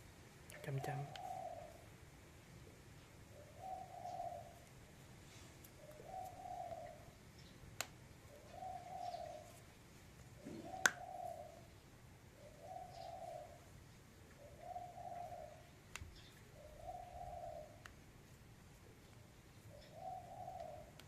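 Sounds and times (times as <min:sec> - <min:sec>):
dove cooing: 0:00.6 - 0:01.9, 0:02.6 - 0:04.7, 0:05.8 - 0:07.2, 0:08.3 - 0:09.6, 0:10.4 - 0:11.8, 0:12.4 - 0:17.8, 0:19.7 - 0:21.0.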